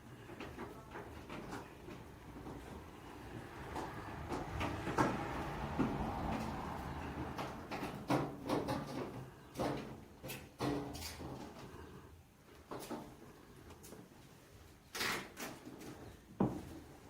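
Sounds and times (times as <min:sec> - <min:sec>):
knocks and clunks: 0:00.4 - 0:10.0.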